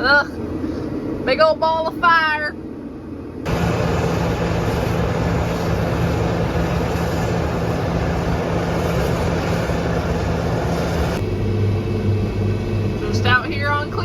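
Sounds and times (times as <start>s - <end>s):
harvester engine running under load: 3.5s - 14.0s.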